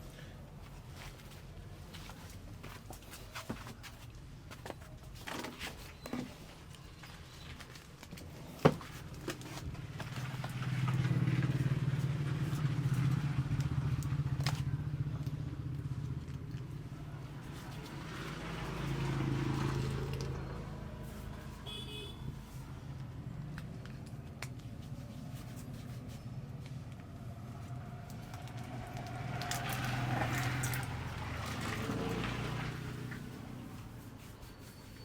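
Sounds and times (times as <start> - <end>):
vehicle engine passing: 9.8 - 23.5, 25.2 - 34.1.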